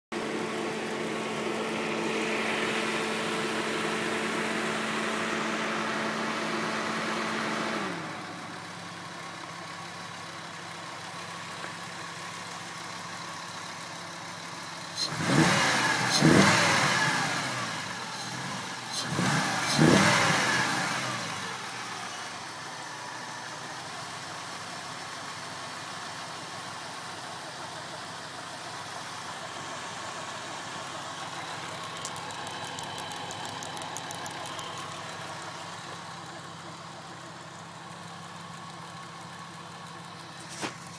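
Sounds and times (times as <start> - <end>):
car engine idling: 0.1 - 15.4, 16.0 - 40.9
car engine revving: 15.0 - 21.9.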